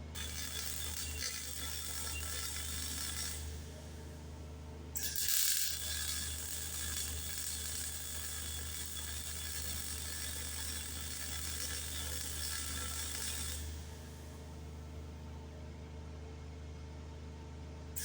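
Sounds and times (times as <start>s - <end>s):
power tool working on steel: 0.1s - 4.4s, 5.0s - 14.3s.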